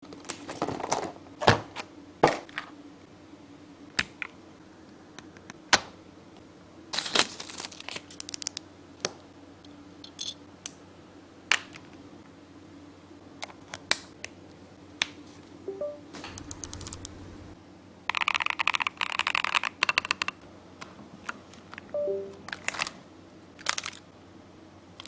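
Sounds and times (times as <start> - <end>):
packaging crinkling and rustling: 7.0 - 8.6, 23.6 - 24.1.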